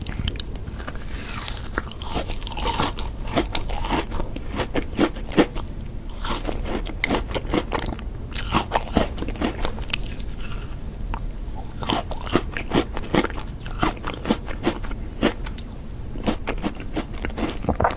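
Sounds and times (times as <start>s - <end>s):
person chewing ice cream: 0.0s - 17.9s.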